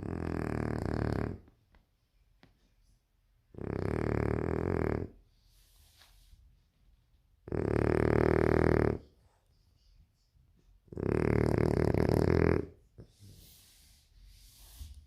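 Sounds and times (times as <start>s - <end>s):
dog snoring: 0.0s - 1.5s, 3.5s - 5.3s, 7.4s - 9.2s, 10.9s - 14.8s
faint breath noise: 13.0s - 15.0s.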